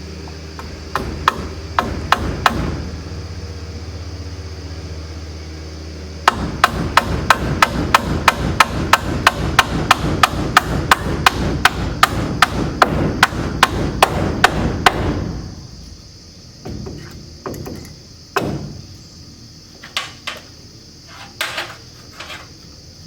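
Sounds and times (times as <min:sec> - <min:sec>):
hammer driving nails into wood: 0:06.3 - 0:15.3
knocks and taps on wood: 0:16.6 - 0:18.8.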